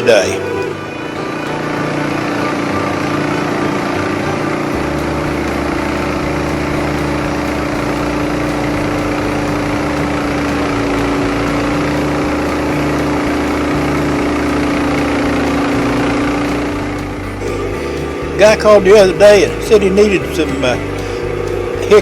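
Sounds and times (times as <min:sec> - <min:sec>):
sawmill engine idling: 0:00.0 - 0:22.0.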